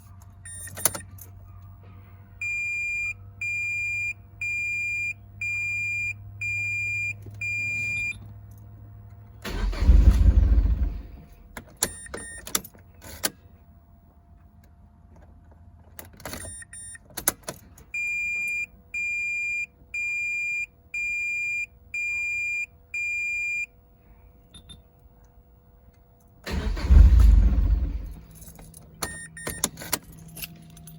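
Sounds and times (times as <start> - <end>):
keys clicking in ignition: 0.0 - 1.7, 7.1 - 13.4, 14.4 - 18.6, 24.5 - 30.9
starter cranking engine: 9.4 - 11.2, 26.5 - 28.2
faint electrical hum: 11.0 - 27.1.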